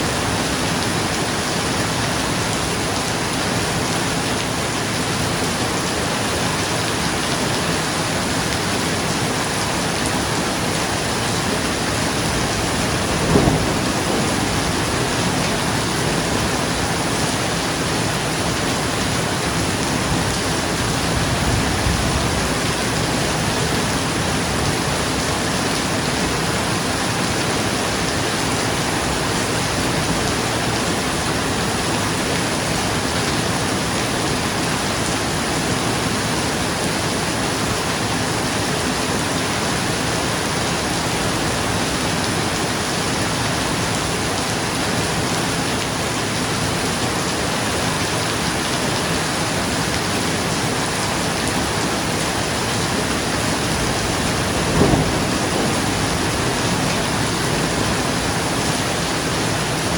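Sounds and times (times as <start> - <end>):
rain falling on a roof: 0.0 - 59.9
low thump: 13.3 - 14.4.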